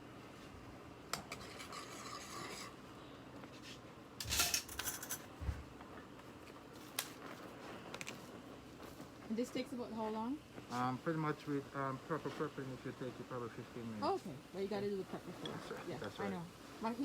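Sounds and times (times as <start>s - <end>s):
utensils clinking and scraping dishes: 1.2s - 2.8s, 4.2s - 5.3s.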